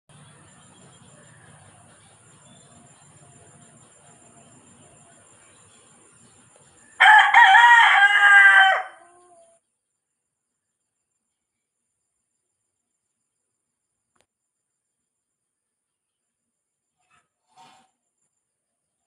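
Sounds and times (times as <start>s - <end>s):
rooster crowing: 6.9s - 9.6s.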